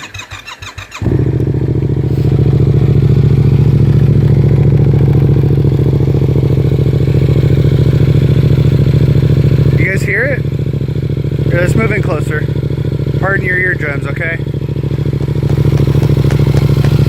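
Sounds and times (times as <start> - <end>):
motorcycle engine cranking: 0.0 - 5.3, 14.8 - 17.0
motorcycle engine idling: 0.0 - 17.0.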